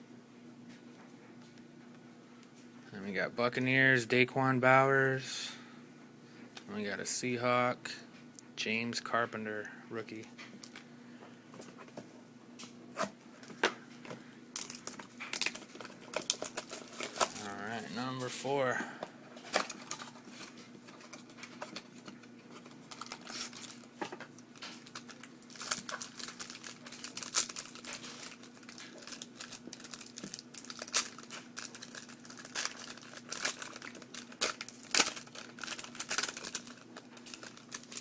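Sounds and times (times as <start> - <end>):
card pack wrapper crinkling and tearing: 14.6 - 18.4, 19.4 - 38.0.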